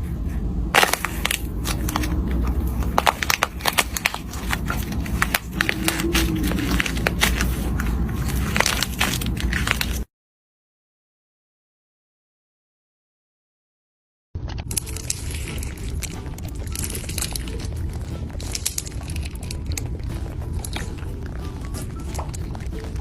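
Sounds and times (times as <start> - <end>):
low steady rumble: 0.0 - 10.1, 14.4 - 23.0
slime crackling and popping: 0.8 - 10.1, 14.5 - 23.0.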